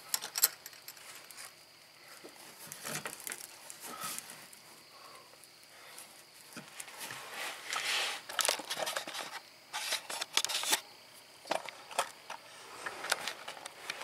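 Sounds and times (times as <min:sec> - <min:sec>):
rustling scrapes: 0:06.6 - 0:10.8.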